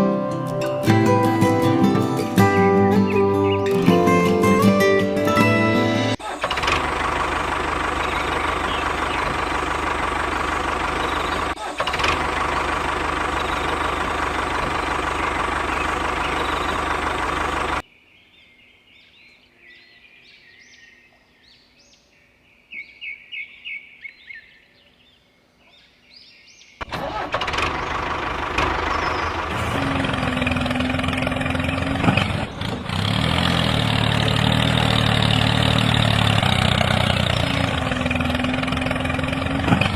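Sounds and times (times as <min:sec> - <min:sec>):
engine running: 0:00.0 - 0:17.8, 0:26.8 - 0:39.9.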